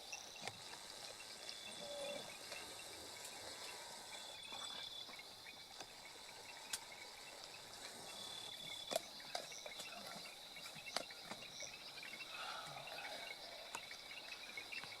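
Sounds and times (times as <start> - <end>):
high insect trill: 0.0 - 15.0.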